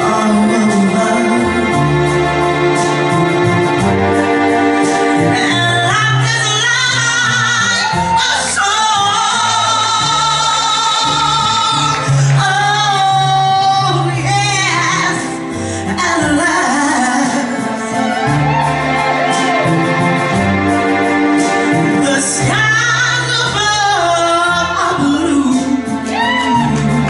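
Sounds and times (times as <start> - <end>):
woman singing a soul ballad: 0.0 - 2.1, 5.2 - 18.3, 21.7 - 27.0
band with organ and bass: 0.0 - 27.0.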